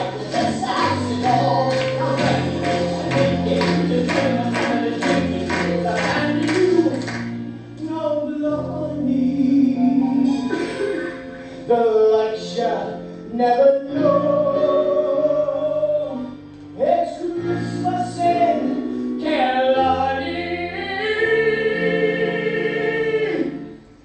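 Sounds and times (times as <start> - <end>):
steady bass line: 0.0 - 7.6
instrumental accompaniment: 0.0 - 13.3.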